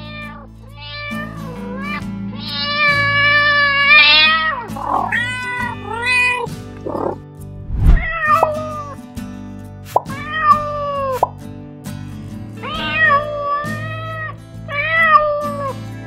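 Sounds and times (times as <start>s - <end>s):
cat meowing: 0.0s - 7.2s, 7.9s - 9.0s, 10.1s - 11.3s, 12.6s - 15.7s
background music: 0.0s - 16.0s.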